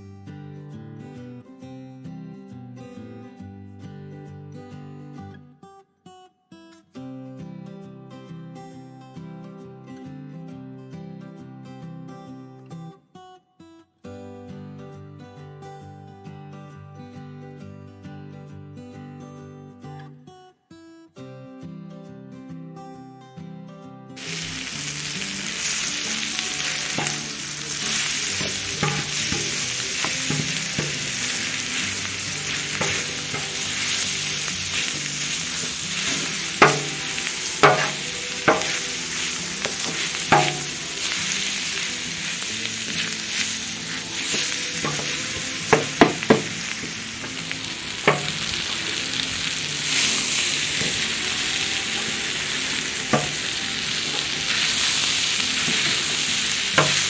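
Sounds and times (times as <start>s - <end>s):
food sizzling in frying pan: 24.2s - 57.0s
spoon knocking against pan: 26.9s - 34.2s, 36.1s - 38.9s, 39.6s - 40.8s, 44.3s - 46.6s, 48.1s - 48.5s, 53.1s - 53.4s.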